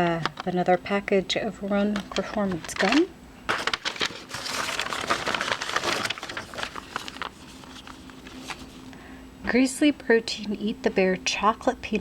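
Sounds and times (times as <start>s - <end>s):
packaging crinkling and rustling: 1.9s - 8.9s.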